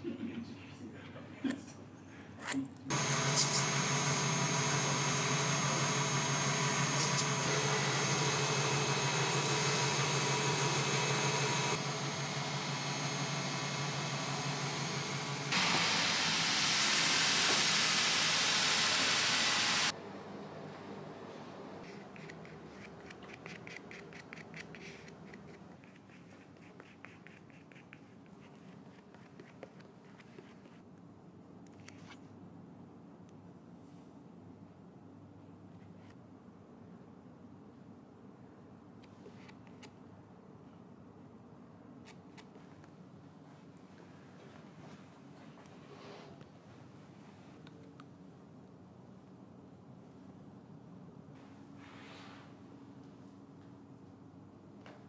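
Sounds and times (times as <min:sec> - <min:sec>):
electric machine motor humming: 0:02.9 - 0:20.0
scratching and rubbing: 0:21.9 - 0:30.8.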